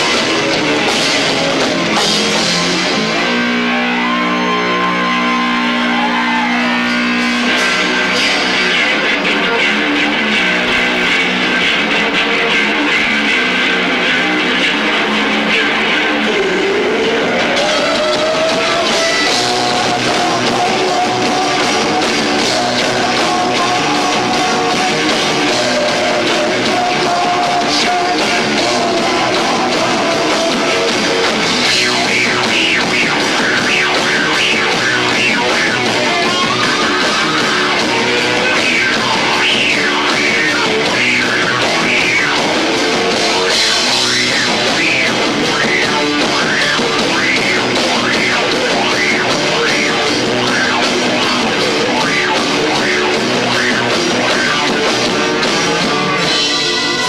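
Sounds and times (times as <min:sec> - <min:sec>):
live rock band: 0:00.0 - 0:57.0
fast busy lead lines: 0:12.1 - 0:57.0.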